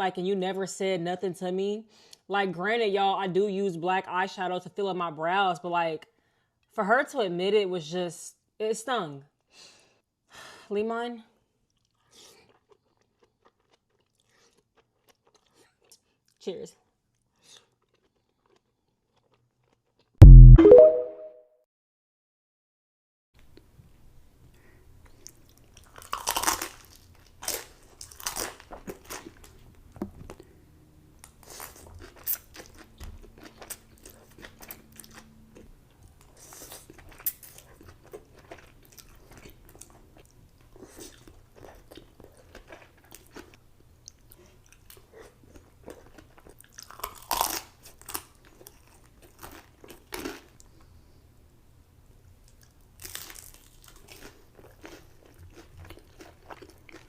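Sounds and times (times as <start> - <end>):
person chewing: 11.7 - 20.5, 25.0 - 29.6, 31.2 - 50.9, 52.4 - 57.0
crunchy food crunching: 11.8 - 16.4, 17.1 - 20.2, 25.1 - 29.6, 31.2 - 50.8, 52.4 - 57.0.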